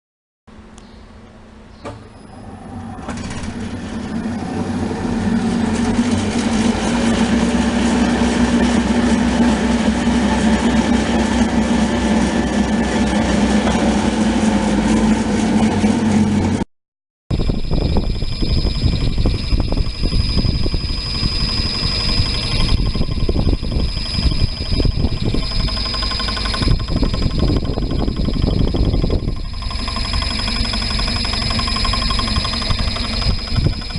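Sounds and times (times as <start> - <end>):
milling machine motor humming: 2.0 - 16.6, 17.3 - 33.9
rapid ticking: 17.4 - 33.9.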